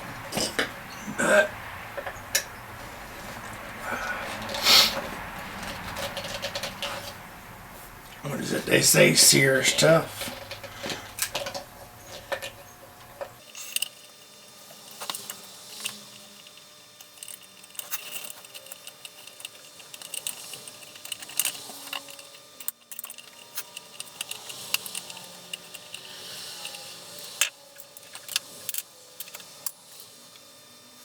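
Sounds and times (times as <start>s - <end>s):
clicks and rattles of parts: 4.4s - 7.2s, 9.8s - 29.8s.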